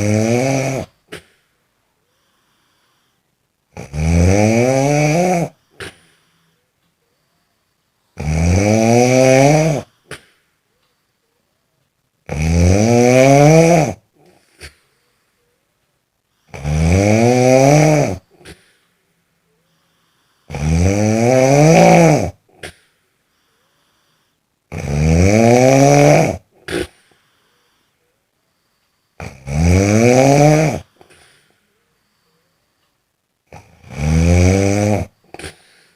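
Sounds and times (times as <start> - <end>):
loud snoring: 0.0 - 1.4, 3.7 - 6.5, 8.2 - 10.3, 12.2 - 14.8, 16.4 - 18.7, 20.1 - 22.8, 23.9 - 27.8, 29.1 - 31.4, 33.5 - 35.9.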